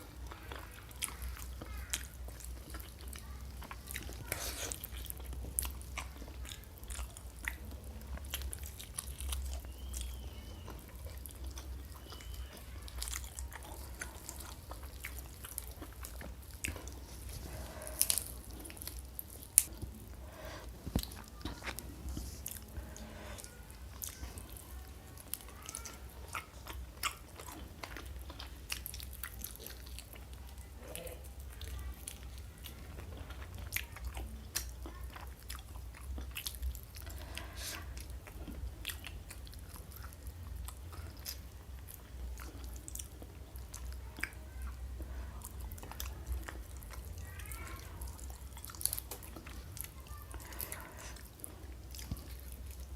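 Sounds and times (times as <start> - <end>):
crunching bites and chewing: 0.1 - 31.2.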